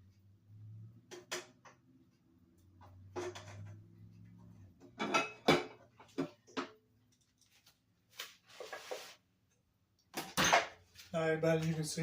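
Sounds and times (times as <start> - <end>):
dishes and utensils clinking: 3.0 - 3.8, 4.8 - 7.3, 10.2 - 10.9.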